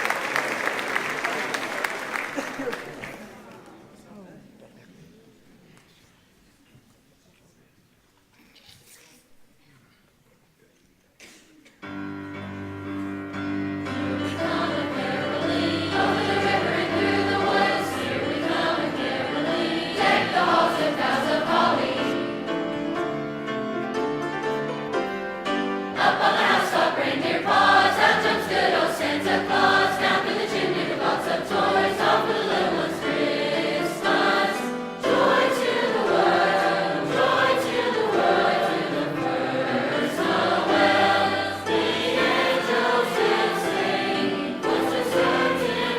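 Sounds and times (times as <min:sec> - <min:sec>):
choir singing: 0:13.3 - 0:23.8, 0:25.5 - 0:45.9.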